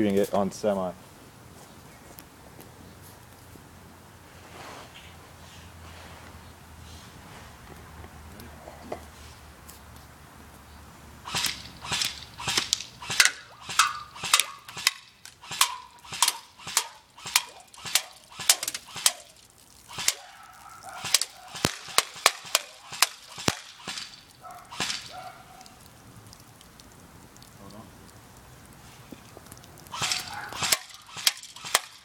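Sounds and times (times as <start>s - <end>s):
airsoft rifle firing single shots: 11.2s - 20.3s, 21.0s - 25.2s, 29.9s - 32.0s.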